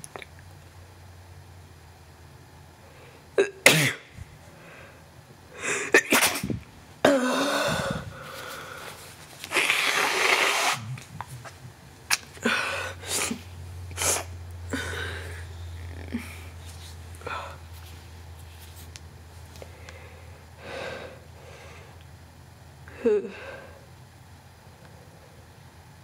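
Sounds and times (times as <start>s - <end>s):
man sneezing: 3.4s - 4.1s, 5.6s - 8.4s, 12.4s - 15.5s
breathy intakes: 4.6s - 17.7s, 19.6s - 22.0s, 22.9s - 23.8s.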